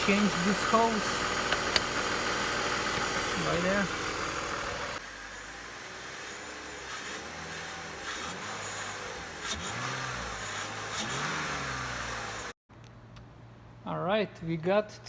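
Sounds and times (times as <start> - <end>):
car engine idling: 0.0 - 5.1.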